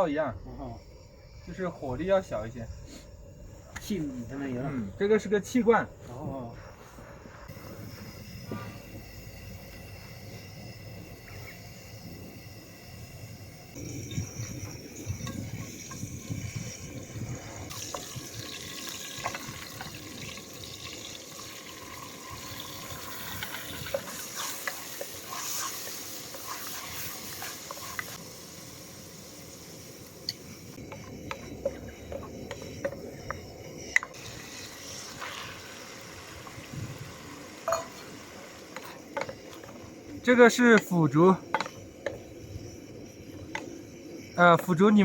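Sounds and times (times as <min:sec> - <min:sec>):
cookware clinking: 0:37.6 - 0:38.1, 0:40.8 - 0:42.2.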